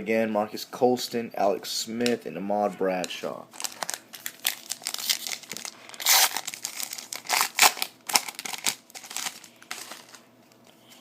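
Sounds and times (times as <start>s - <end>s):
foil wrapper crinkling and tearing: 3.5s - 10.3s.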